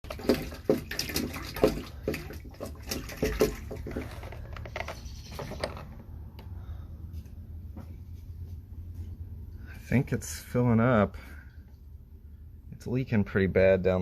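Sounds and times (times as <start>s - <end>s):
water running and splashing: 0.0s - 4.3s.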